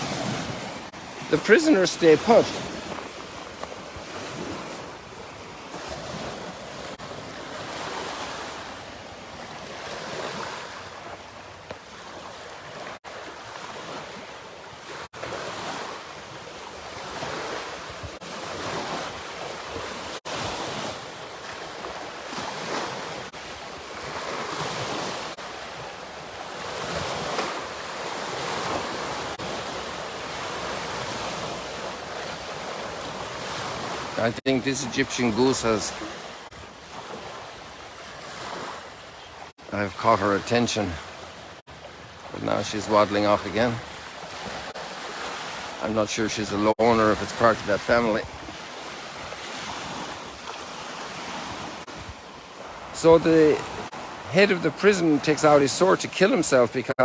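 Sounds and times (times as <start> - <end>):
lake waves washing ashore: 0.0 - 57.0
wind on microphone: 48.2 - 53.0.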